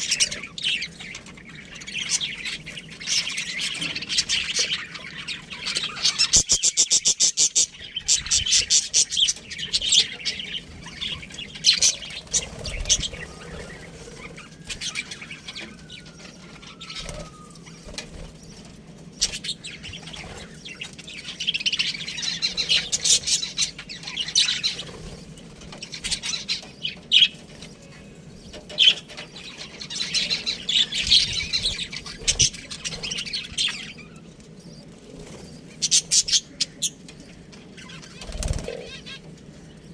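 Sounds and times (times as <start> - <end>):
budgerigars chirping and chattering: 0.0 - 39.9
wing flaps: 38.2 - 38.8.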